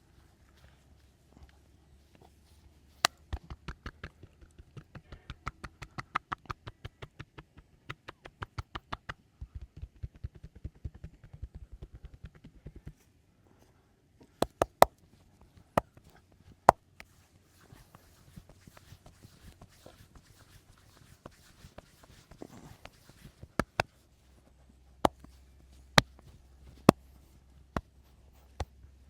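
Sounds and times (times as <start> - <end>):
hand strikes of massage: 2.9 - 13.0, 14.4 - 15.0, 16.6 - 24.0, 25.0 - 28.9.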